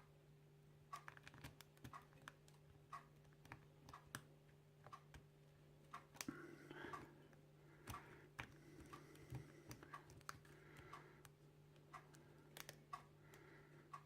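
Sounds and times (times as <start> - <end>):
steady low hum: 3.7 - 14.0.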